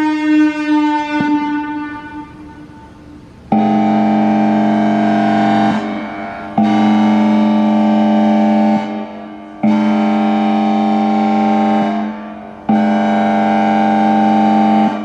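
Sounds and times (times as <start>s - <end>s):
warning siren horn blasts: 0.0s - 15.0s.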